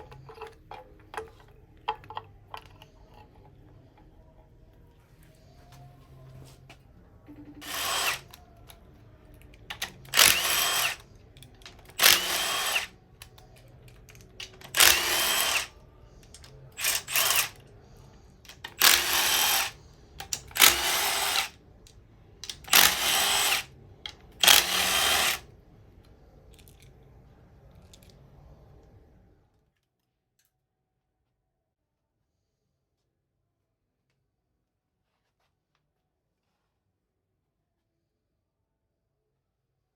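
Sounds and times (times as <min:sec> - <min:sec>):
low room hum: 0:00.0 - 0:39.9
power tool bursts: 0:07.6 - 0:08.4, 0:10.1 - 0:11.0, 0:12.0 - 0:12.9, 0:14.6 - 0:15.7, 0:16.8 - 0:17.6, 0:18.6 - 0:19.8, 0:20.4 - 0:21.6, 0:22.6 - 0:23.7, 0:24.4 - 0:25.4.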